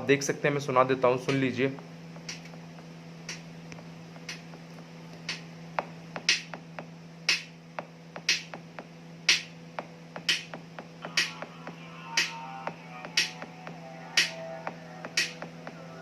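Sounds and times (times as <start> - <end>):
low hum: 0.0 - 16.0
song beat from phone speaker: 2.2 - 2.7, 3.3 - 3.5, 4.2 - 16.0.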